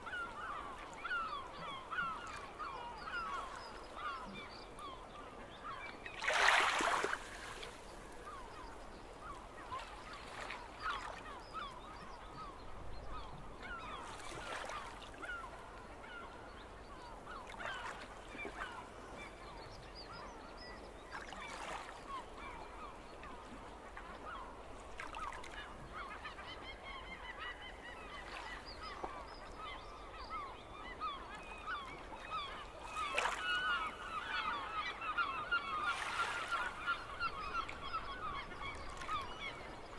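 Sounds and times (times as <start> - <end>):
gulls calling: 25.2 - 39.9.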